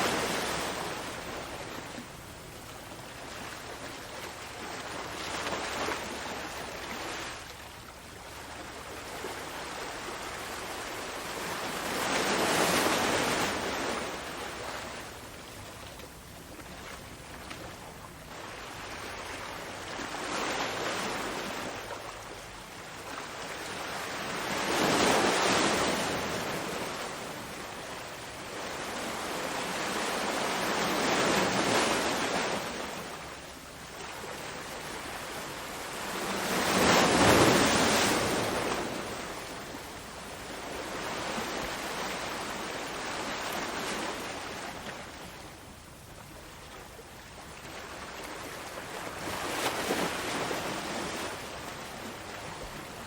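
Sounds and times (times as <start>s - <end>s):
ocean waves breaking: 0.0s - 7.6s, 16.6s - 45.5s.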